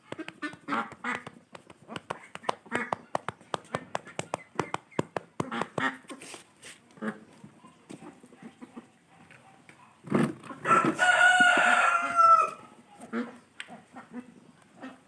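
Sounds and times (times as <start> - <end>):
chicken clucking: 10.5 - 15.0
rooster crowing: 10.6 - 12.7.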